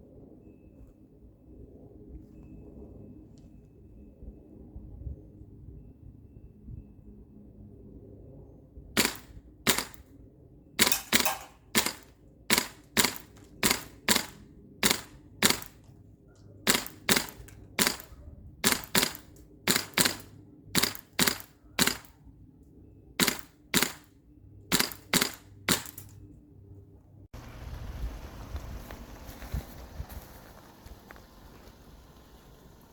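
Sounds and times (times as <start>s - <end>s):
airsoft gun shots: 9.0s - 10.0s, 10.8s - 15.9s, 16.7s - 22.1s, 23.2s - 24.1s, 24.7s - 26.1s.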